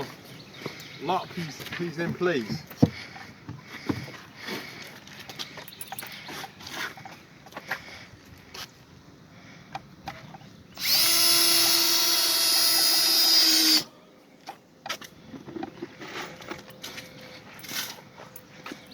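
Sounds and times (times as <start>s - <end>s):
power drill driving a screw: 10.8s - 13.9s.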